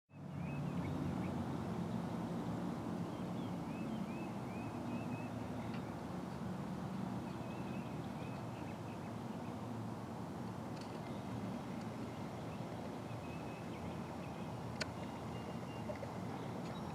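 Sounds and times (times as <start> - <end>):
low rumble of distant traffic: 0.1 - 16.9
small birds chirping: 3.1 - 6.0, 7.0 - 9.8, 10.8 - 16.9.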